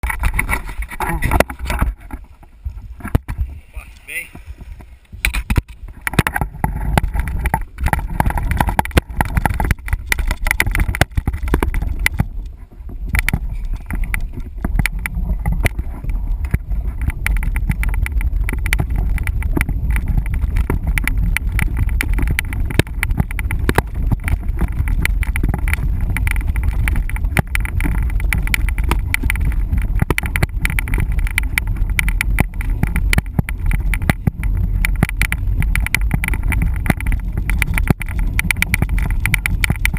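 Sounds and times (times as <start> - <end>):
mountain bike rattling on dirt trail: 0.0 - 39.9.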